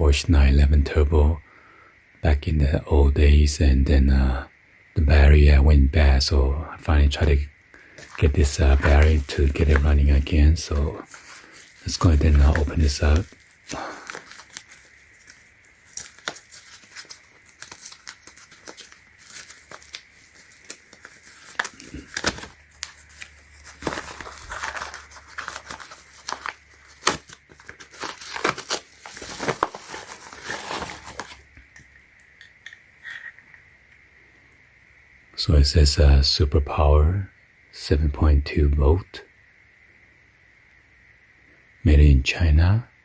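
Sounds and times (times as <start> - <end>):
packaging torn and crinkled: 8.0 - 31.4.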